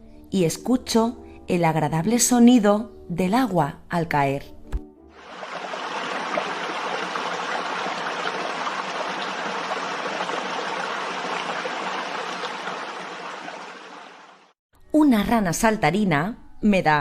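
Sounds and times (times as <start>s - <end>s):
fountain water splashing: 5.2s - 14.5s.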